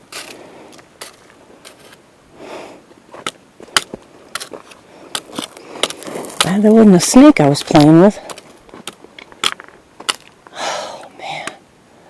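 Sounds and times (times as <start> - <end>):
footsteps on rocky ground: 0.0 - 2.0, 2.9 - 10.5
soft rustle: 0.0 - 10.5.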